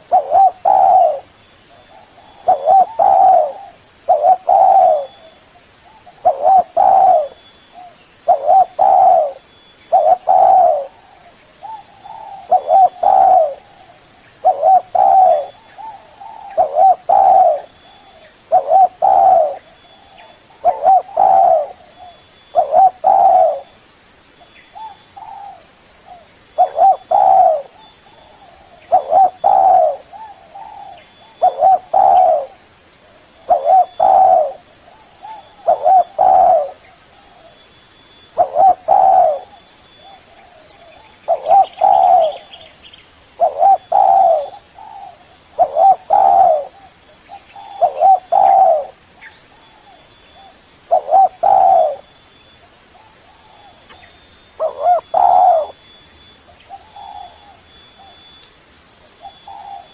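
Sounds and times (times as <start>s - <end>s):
dove cooing: 0.0s - 23.8s, 24.7s - 37.6s, 38.4s - 42.8s, 43.4s - 52.1s, 52.9s - 58.4s, 59.1s - 59.9s.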